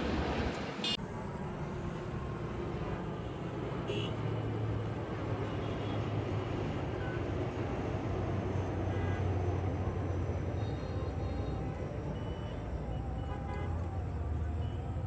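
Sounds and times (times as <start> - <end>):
engine rumble: 0.0 - 3.8.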